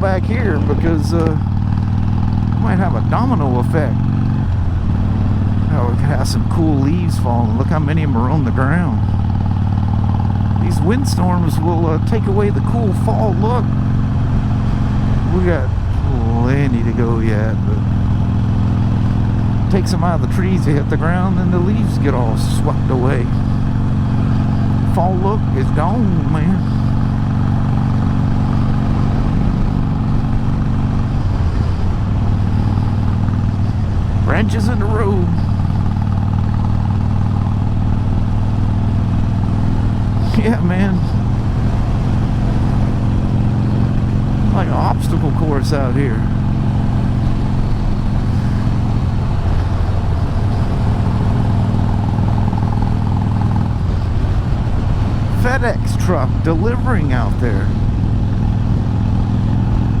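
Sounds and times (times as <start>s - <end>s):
motorcycle engine running: 0.0s - 60.0s
wind noise: 14.3s - 45.1s, 46.3s - 60.0s.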